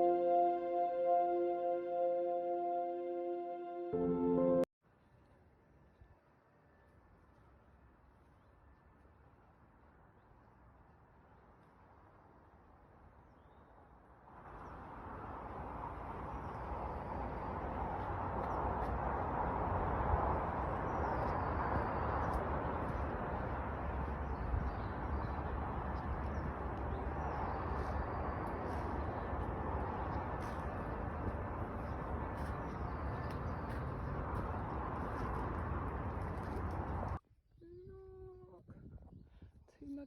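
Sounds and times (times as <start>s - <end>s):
wind rumble on microphone: 14.5s - 40.0s.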